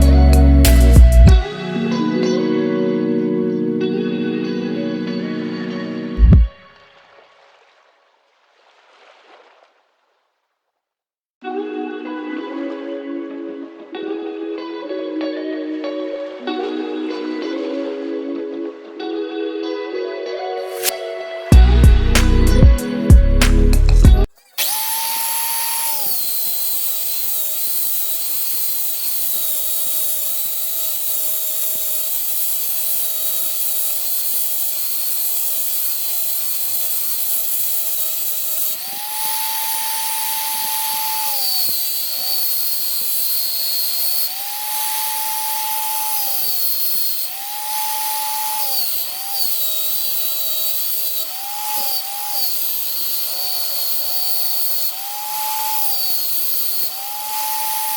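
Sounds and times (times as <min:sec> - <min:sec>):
electric power tool whining: 0:00.0 - 0:06.7, 0:20.6 - 0:57.9.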